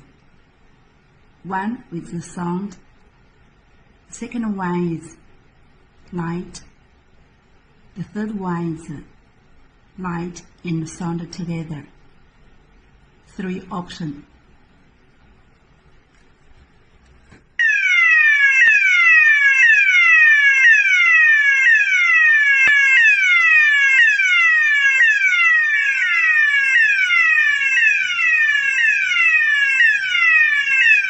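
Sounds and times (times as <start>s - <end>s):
fire alarm sounder sweeping tone: 17.6s - 31.0s.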